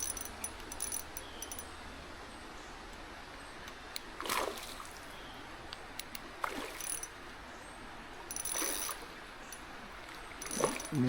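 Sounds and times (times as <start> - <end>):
fish splashing at water surface: 4.2 - 5.1, 6.4 - 7.1, 10.0 - 11.0.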